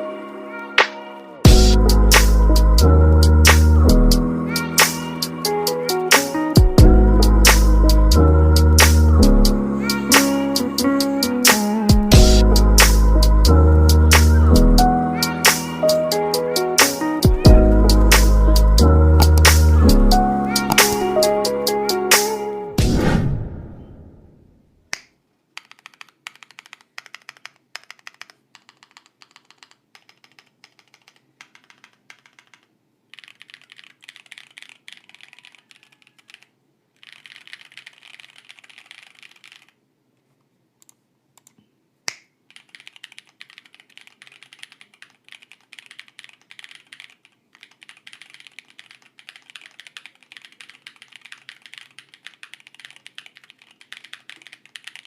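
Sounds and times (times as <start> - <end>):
mechanical keyboard typing: 19.2 - 19.7, 20.5 - 22.3, 25.6 - 39.8, 42.5 - 55.0.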